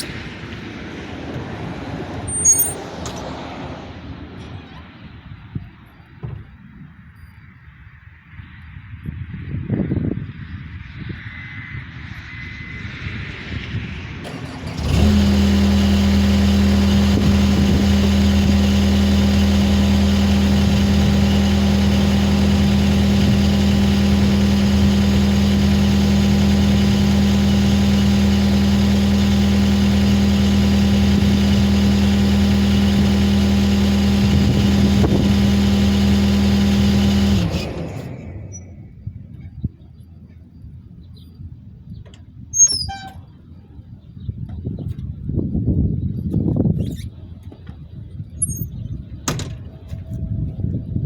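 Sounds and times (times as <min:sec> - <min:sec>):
engine running: 0:00.0 - 0:04.7, 0:13.7 - 0:39.0.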